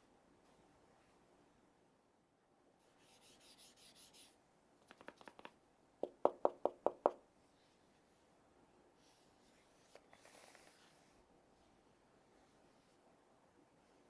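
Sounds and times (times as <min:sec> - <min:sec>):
light keyboard clicks: 0:04.8 - 0:05.6.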